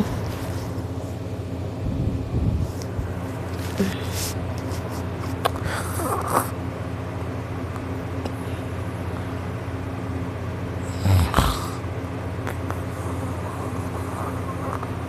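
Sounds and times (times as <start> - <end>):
steady low hum: 0.0 - 15.0
loud snort: 10.8 - 11.8
man snoring: 10.8 - 11.9.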